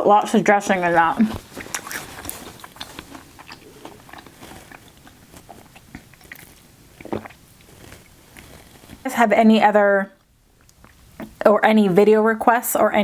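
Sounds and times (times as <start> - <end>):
close chewing and crunching: 0.8 - 9.2.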